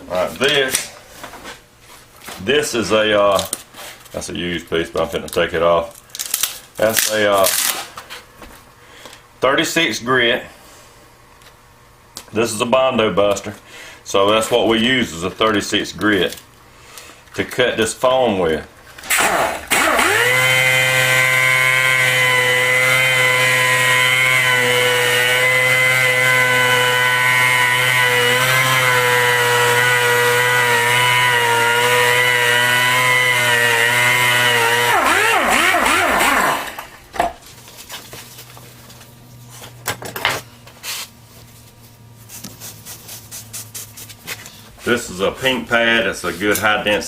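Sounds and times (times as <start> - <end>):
power grinder sanding foam: 19.1 - 36.9
faint rubbing and handling: 40.8 - 45.0.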